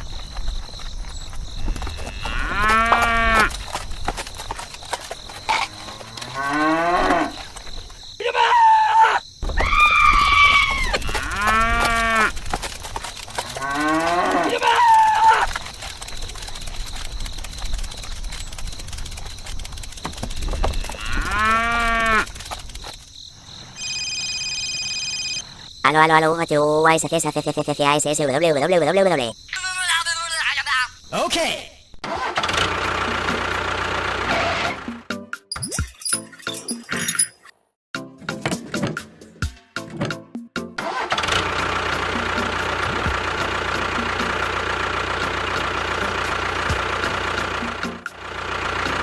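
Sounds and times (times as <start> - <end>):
cattle mooing: 2.1 - 3.5, 5.5 - 7.4, 10.6 - 12.4, 13.4 - 15.5, 20.8 - 22.3.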